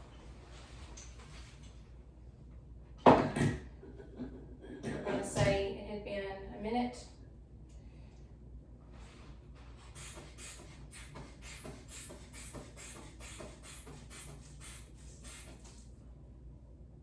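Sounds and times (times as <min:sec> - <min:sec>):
rubber bulb puffs of air: 0:09.8 - 0:15.9.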